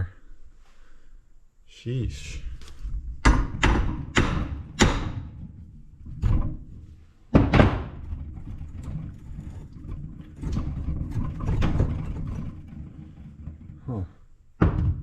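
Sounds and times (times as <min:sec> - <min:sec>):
metal clatter and handling noise: 0:08.0 - 0:14.4.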